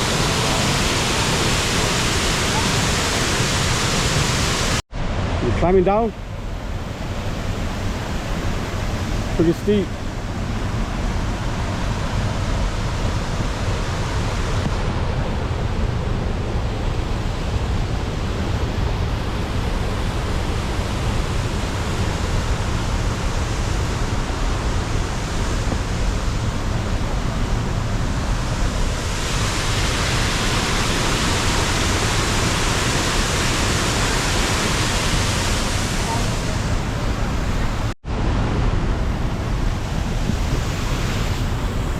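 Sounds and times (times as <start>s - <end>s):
waterfall roaring: 0.0s - 41.9s.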